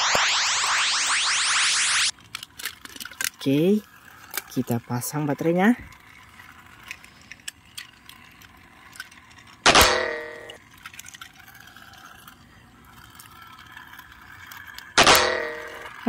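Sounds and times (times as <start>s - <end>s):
ringing clang: 9.7s - 10.6s.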